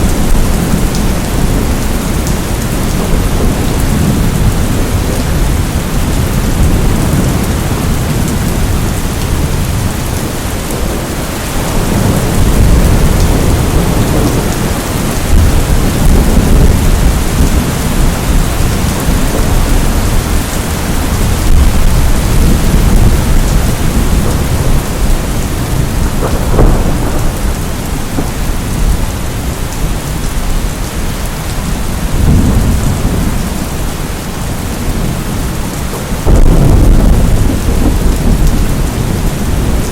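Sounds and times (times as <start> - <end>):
rolling thunder: 0.0 - 30.9, 31.5 - 39.9
steady loud rain: 0.0 - 39.9.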